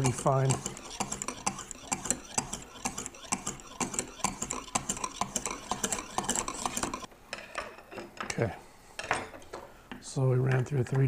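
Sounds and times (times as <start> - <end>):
sharpening stone scraping steel: 0.0 - 7.1.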